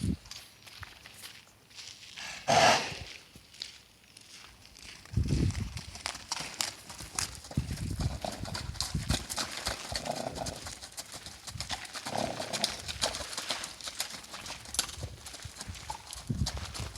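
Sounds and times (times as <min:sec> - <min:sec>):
horse hooves clip-clopping: 0:00.0 - 0:16.9
horse making odd noise: 0:02.2 - 0:03.1, 0:10.0 - 0:10.7, 0:12.0 - 0:12.8.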